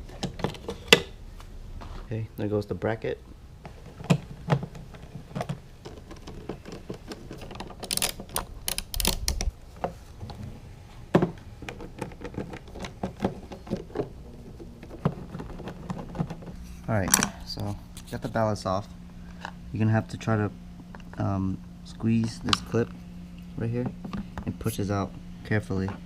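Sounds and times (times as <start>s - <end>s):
plastic and metal parts clicking: 3.7s - 9.9s.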